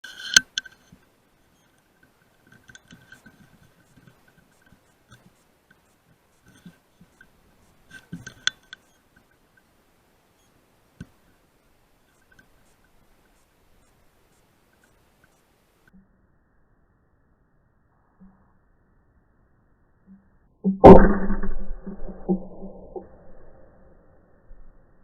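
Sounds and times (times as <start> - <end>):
faint clicks: 0.0 - 9.8, 12.0 - 16.1
faint high steady tone: 0.1 - 25.0.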